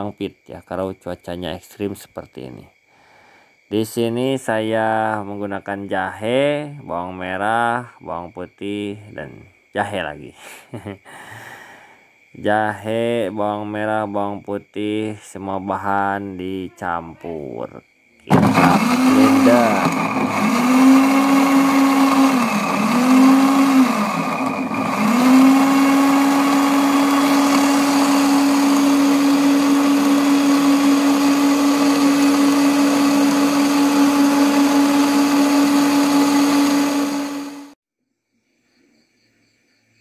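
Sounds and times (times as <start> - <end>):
electric blender grinding: 18.3 - 37.8.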